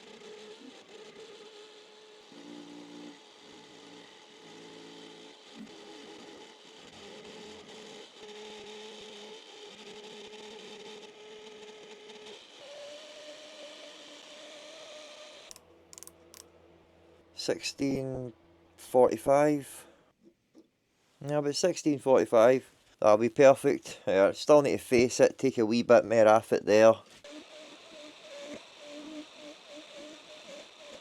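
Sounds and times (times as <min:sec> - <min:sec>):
metal lathe motor running: 0:00.0 - 0:16.5, 0:27.2 - 0:31.0.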